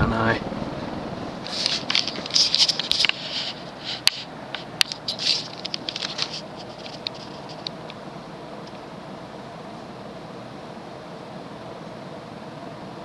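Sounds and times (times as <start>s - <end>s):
scratchy crackling and clicking: 0.0s - 8.0s
ceiling fan running: 0.0s - 13.0s.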